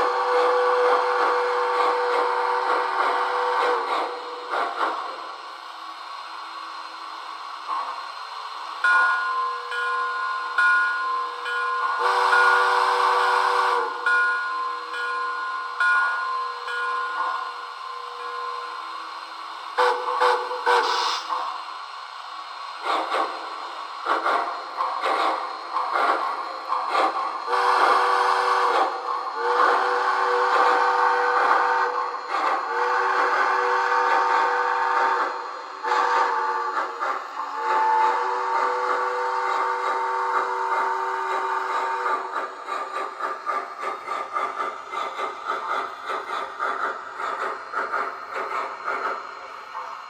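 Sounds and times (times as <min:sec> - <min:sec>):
steam whistle blasts: 0:00.0 - 0:04.0, 0:11.9 - 0:14.0, 0:19.8 - 0:21.4, 0:27.5 - 0:32.0, 0:32.7 - 0:42.3
model locomotive steam chuffing: 0:00.0 - 0:50.0.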